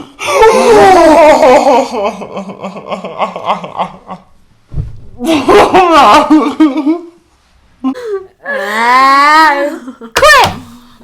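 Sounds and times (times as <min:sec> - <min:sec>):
low thump: 0:04.7 - 0:05.2.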